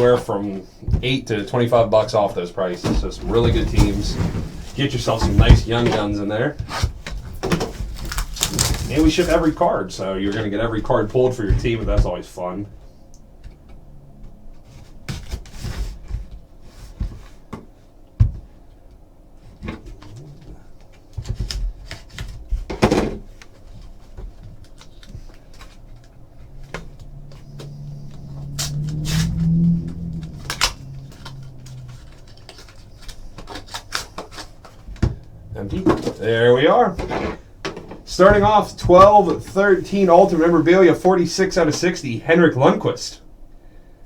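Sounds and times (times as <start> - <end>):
low steady hum: 0.0 - 44.0
box handling clicks and rustling: 2.8 - 9.6, 20.8 - 36.3.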